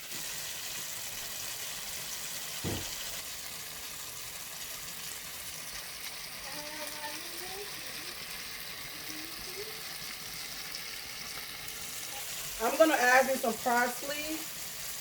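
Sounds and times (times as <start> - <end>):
food sizzling in a pot: 0.0 - 15.0
knock: 2.6 - 3.0.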